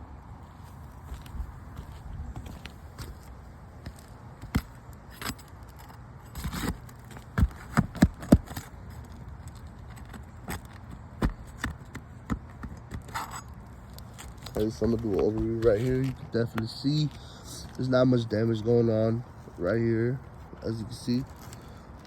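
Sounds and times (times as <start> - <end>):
clicks and taps on shingles: 3.8 - 17.8
loud knocks on shingles: 7.3 - 8.7.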